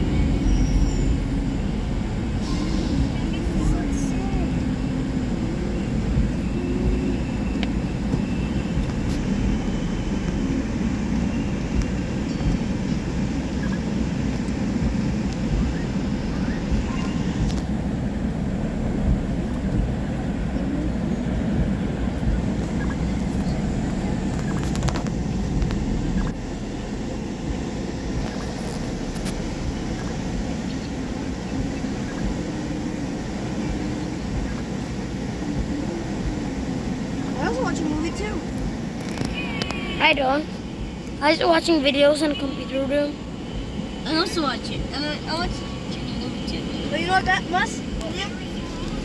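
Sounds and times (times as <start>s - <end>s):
car engine and road noise: 0.0s - 49.0s.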